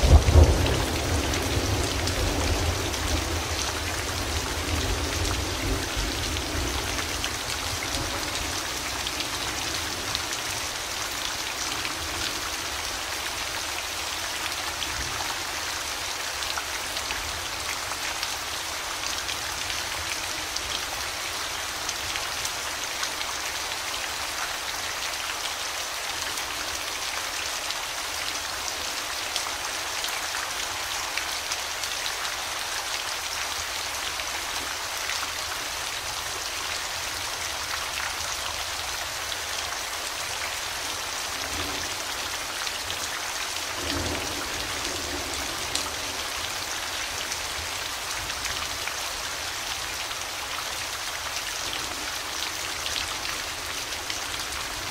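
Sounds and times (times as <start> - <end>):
steady rainfall: 0.0 - 54.9.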